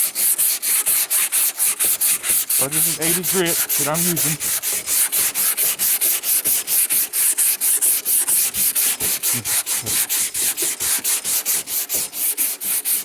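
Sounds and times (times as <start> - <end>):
sandpaper rasping on filler: 0.0 - 13.0.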